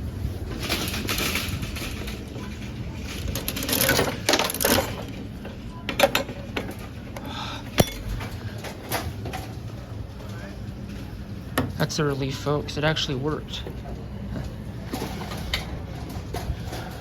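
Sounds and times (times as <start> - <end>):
vending machine crank ratcheting: 3.0 - 5.1.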